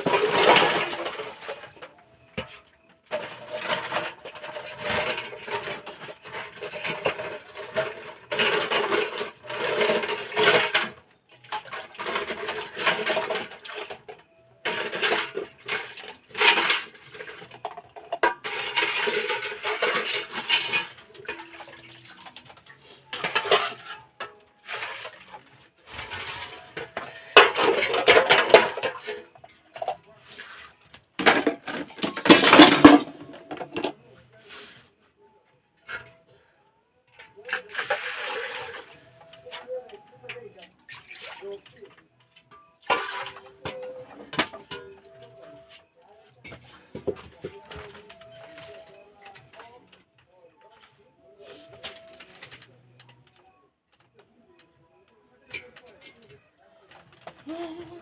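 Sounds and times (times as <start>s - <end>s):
pots and utensils clattering: 0.0s - 34.0s, 37.2s - 45.8s, 46.4s - 49.9s.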